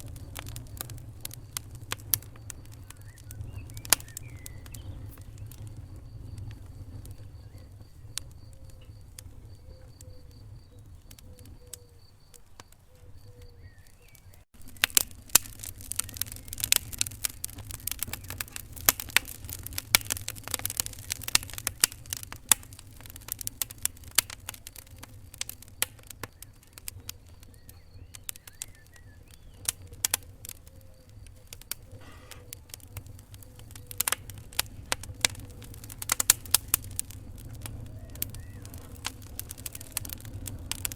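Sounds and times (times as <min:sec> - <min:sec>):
low rumble of flames: 0:00.0 - 0:40.9
wood fire crackling: 0:00.0 - 0:40.9.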